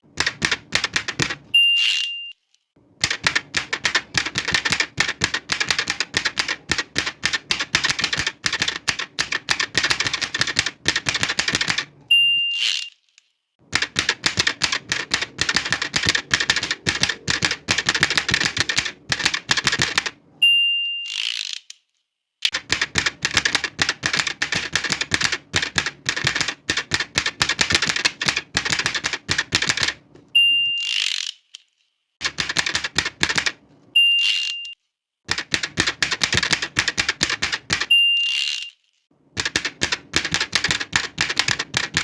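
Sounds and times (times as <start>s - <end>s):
typewriter keystrokes: 0.1s - 1.6s, 3.0s - 12.1s, 13.7s - 20.2s, 22.5s - 30.1s, 32.2s - 33.6s, 35.3s - 38.7s, 39.4s - 42.0s
typewriter carriage return zip: 0.2s - 2.3s, 3.0s - 13.0s, 13.7s - 20.2s, 21.0s - 21.7s, 22.4s - 31.6s, 32.2s - 38.8s, 39.4s - 42.0s.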